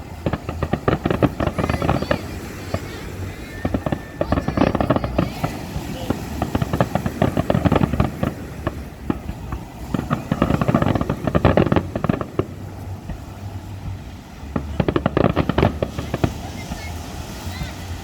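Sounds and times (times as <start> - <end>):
fireworks crackling: 0.0 - 18.0.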